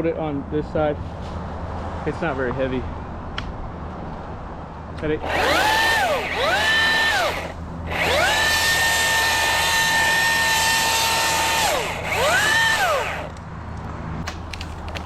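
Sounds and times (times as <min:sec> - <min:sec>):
electric chainsaw motor whining: 0:05.2 - 0:13.4.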